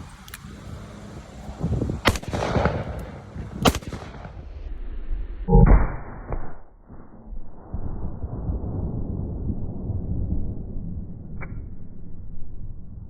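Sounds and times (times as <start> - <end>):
dull gun blast: 2.0 - 4.6, 5.5 - 6.6.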